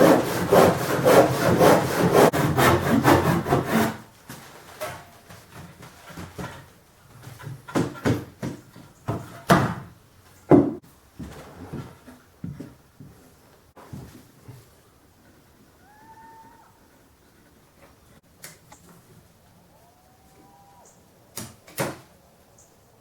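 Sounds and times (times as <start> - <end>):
hand saw cutting wood: 0.0 - 4.1
wooden knocks and clatters: 4.3 - 13.2.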